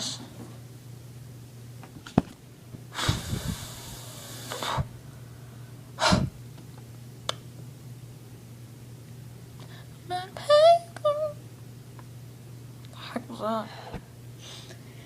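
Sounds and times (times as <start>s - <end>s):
low steady hum: 0.0s - 15.0s
person breathing: 2.9s - 6.3s.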